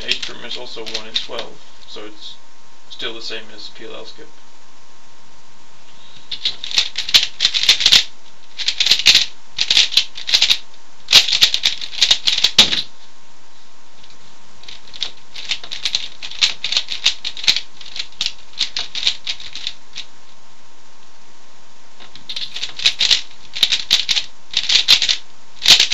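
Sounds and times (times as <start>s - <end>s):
plastic puzzle cube clacking: 0.1s - 1.4s, 6.3s - 12.9s, 14.7s - 20.1s, 22.0s - 25.9s.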